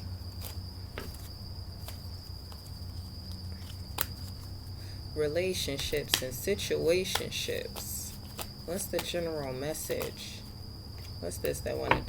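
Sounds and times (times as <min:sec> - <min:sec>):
tarot cards clicking and tapping: 0:07.0 - 0:09.2.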